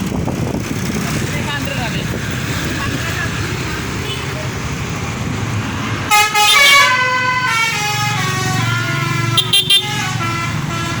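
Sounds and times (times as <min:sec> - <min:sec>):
bus musical horn tune: 0:06.1 - 0:11.0.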